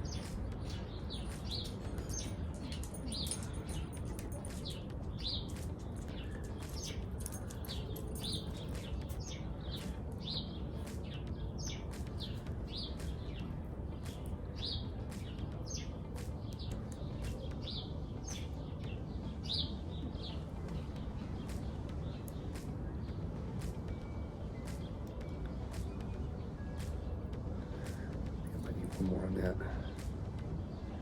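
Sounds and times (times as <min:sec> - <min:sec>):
small bird chirping: 0:00.0 - 0:20.8.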